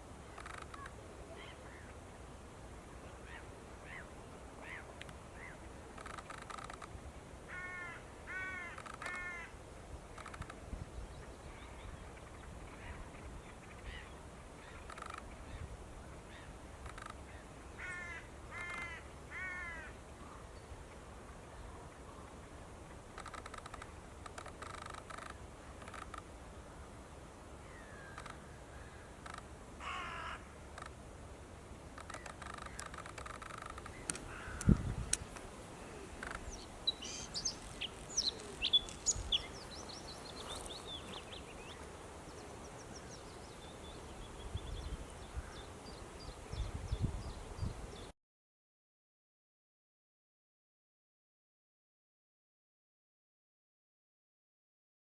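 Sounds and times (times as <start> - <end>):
harsh nasal bird caws: 7.5 - 9.5, 17.8 - 19.9, 29.2 - 30.9, 32.0 - 34.8
wind rumbling on microphone: 9.9 - 16.2, 32.1 - 48.1
dry rattling bird notes: 36.1 - 43.6.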